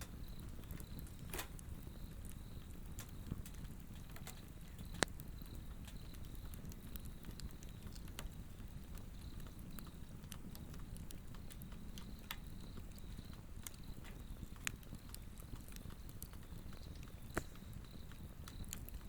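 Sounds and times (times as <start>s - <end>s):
insects chirping: 0.0s - 19.0s
log fire crackling and popping: 0.0s - 19.0s
low rumble of flame: 0.0s - 19.0s.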